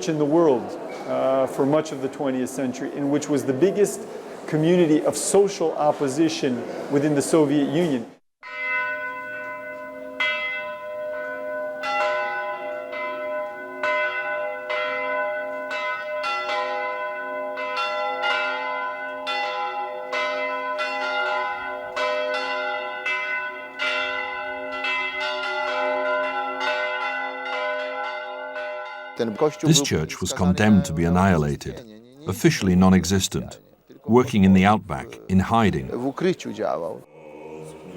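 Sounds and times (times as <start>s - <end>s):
church bells ringing: 8.4s - 31.7s.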